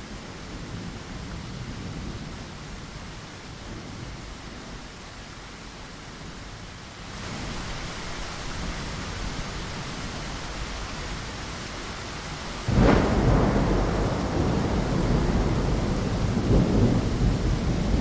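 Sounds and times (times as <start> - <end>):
steady rain: 0.0 - 18.0
thunder clap and rumble: 12.6 - 18.0.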